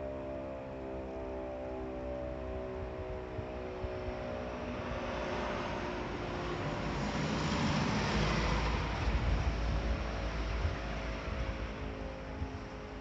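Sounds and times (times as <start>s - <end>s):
vehicle passing: 3.6s - 12.6s.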